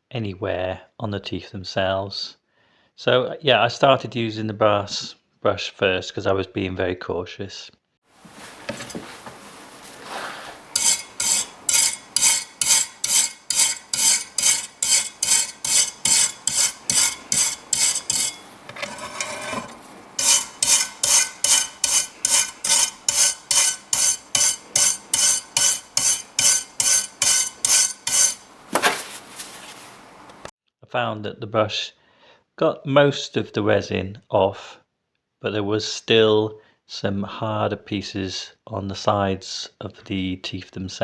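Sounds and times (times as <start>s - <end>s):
wire brush scrubbing saw blade: 10.0s - 30.3s.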